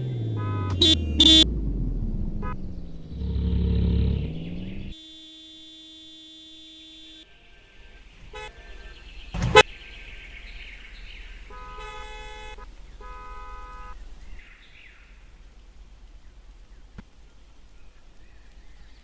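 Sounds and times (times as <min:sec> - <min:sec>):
car horns honking: 0:00.0 - 0:14.3.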